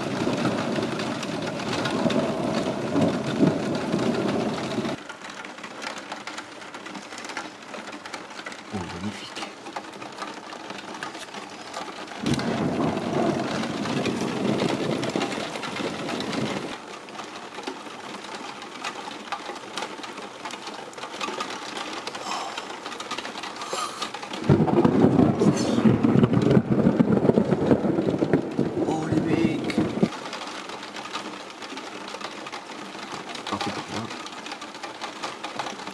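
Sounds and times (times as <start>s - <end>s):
thunder rumbling: 0.0s - 5.0s, 12.2s - 16.8s, 22.2s - 30.2s
steady rain: 0.0s - 35.9s.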